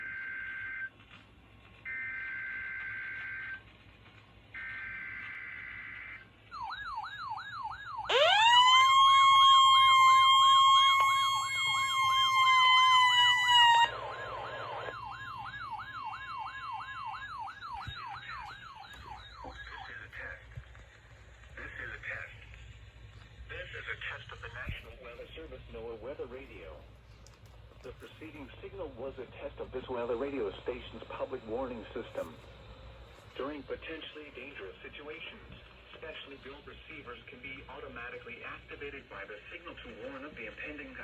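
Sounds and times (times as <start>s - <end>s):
warbling alert sirens: 1.9s - 3.7s, 4.6s - 20.3s
loud steady alarm tone: 4.6s - 20.0s.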